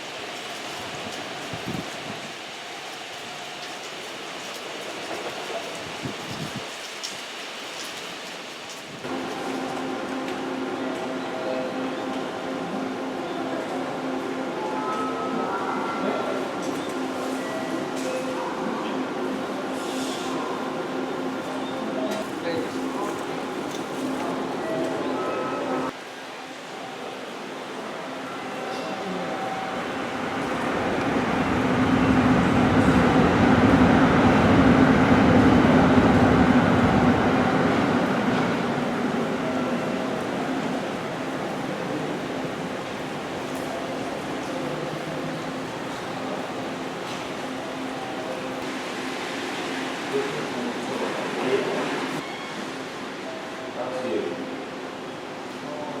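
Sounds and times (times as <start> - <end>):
station background hum and hiss: 9.0 - 56.0
distant voices: 27.8 - 48.6
train wheels rumbling: 29.3 - 48.4.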